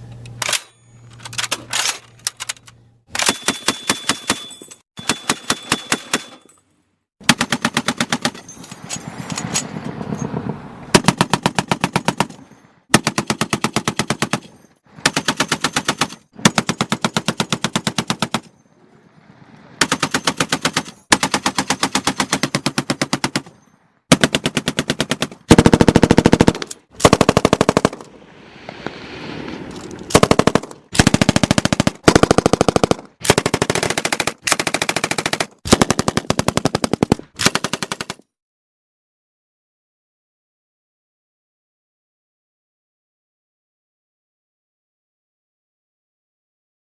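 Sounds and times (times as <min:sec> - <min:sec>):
automatic gunfire bursts: 0:24.1 - 0:28.0, 0:30.1 - 0:38.2.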